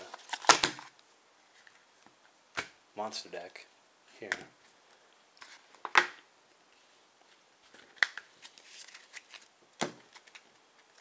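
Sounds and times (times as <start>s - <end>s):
cards clicking and rustling: 7.7s - 11.0s.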